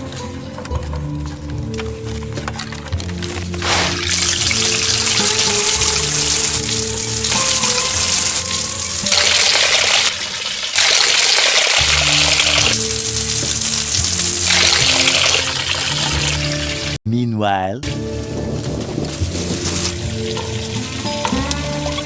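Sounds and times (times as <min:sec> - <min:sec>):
music of long held notes: 0:00.0 - 0:10.3, 0:17.9 - 0:22.0
running water hissing: 0:00.0 - 0:17.0, 0:17.9 - 0:22.0.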